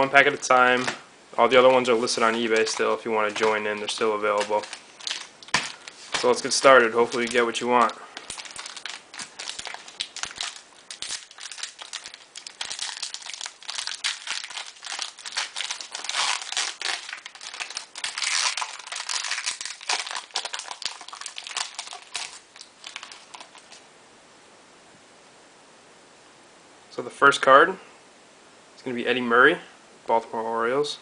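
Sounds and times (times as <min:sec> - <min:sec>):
wrapper crinkling and tearing: 0:00.2 - 0:23.8.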